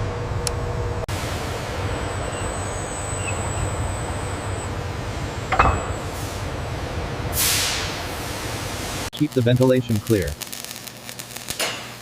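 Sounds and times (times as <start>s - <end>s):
sharp metallic knock: 5.5s - 6.1s.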